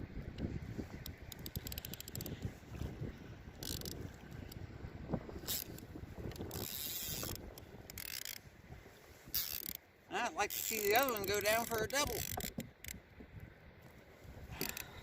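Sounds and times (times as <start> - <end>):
wind on microphone: 0.0 - 15.0
fishing reel whirring: 1.1 - 2.5, 3.6 - 4.5, 5.4 - 8.5, 9.2 - 13.0, 14.5 - 15.0.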